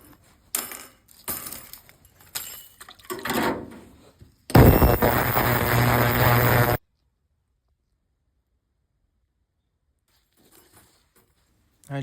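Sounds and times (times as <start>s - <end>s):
ultrasonic cleaner buzzing: 4.6s - 6.8s.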